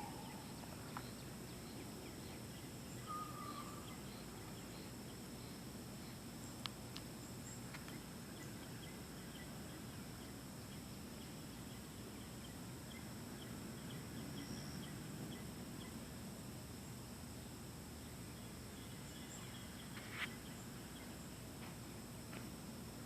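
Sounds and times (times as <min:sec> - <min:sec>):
crickets droning: 0:00.0 - 0:23.0
faint insect chirps: 0:00.0 - 0:23.0.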